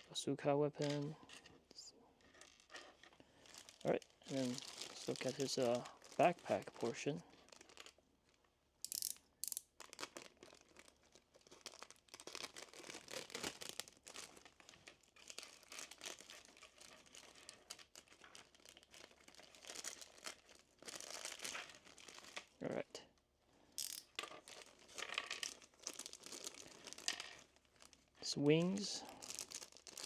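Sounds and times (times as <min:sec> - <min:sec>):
plastic packaging crinkling: 0:02.2 - 0:22.6, 0:23.8 - 0:30.0
small plastic clicks: 0:08.8 - 0:09.7, 0:23.8 - 0:24.4.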